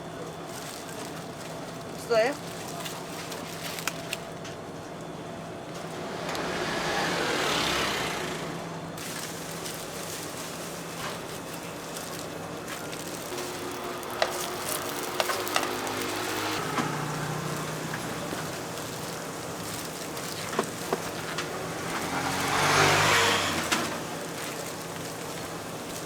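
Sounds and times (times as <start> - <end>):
vehicle engine humming: 5.0 - 26.0
rush of noise: 5.7 - 9.0.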